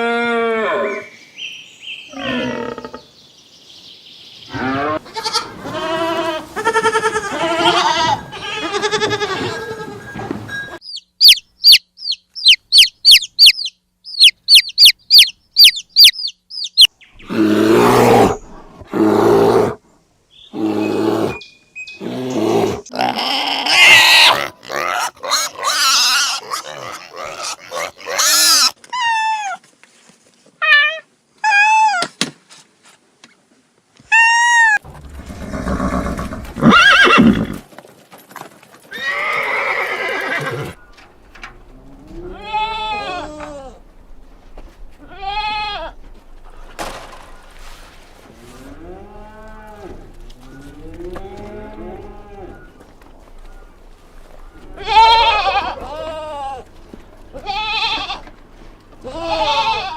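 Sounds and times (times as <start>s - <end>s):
farm animal calls: 4.5s - 19.8s, 20.5s - 29.6s, 48.4s - 58.4s.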